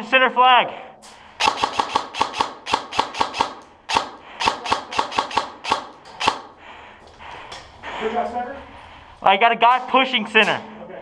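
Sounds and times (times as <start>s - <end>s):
airsoft gun firing rapid shots: 1.4s - 6.6s.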